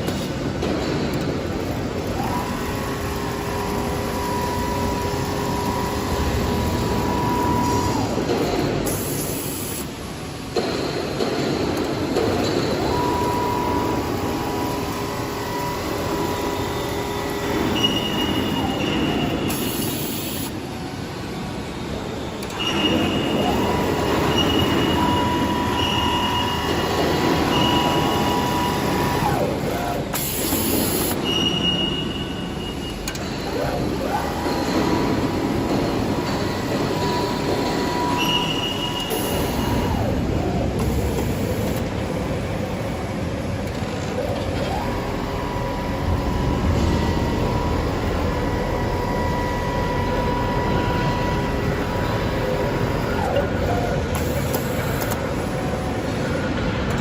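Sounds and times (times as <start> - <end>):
high motor whine: 12.8 - 57.0.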